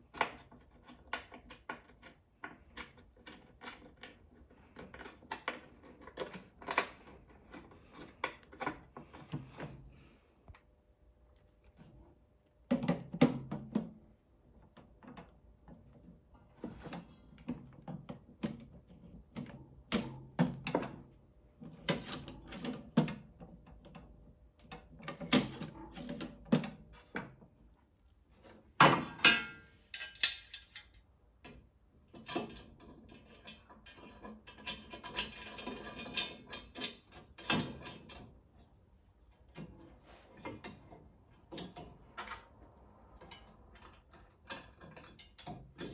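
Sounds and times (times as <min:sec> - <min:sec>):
saw parts knocking and clacking: 0:28.8 - 0:31.0.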